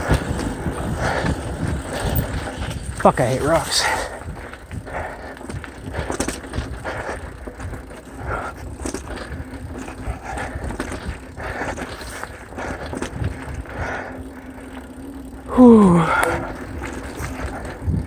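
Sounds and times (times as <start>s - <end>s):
bike knocking and rattling: 0.0s - 18.0s
tyres crunching over gravel: 0.0s - 18.0s.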